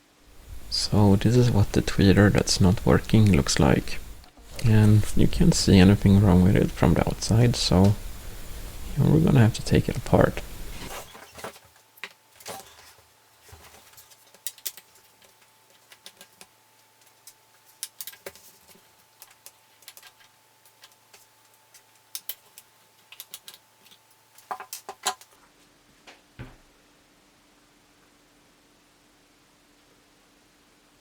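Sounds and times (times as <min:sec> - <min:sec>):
small clicks and taps: 0:14.3 - 0:25.3.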